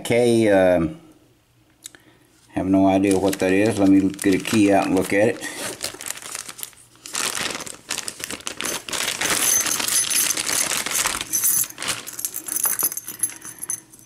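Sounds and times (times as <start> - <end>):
metal keys jingling: 8.7 - 14.0.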